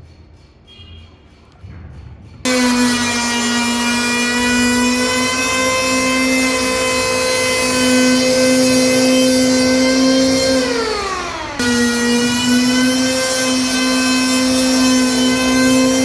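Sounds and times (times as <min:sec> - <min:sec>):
electric planer motor whine: 0:02.5 - 0:16.0.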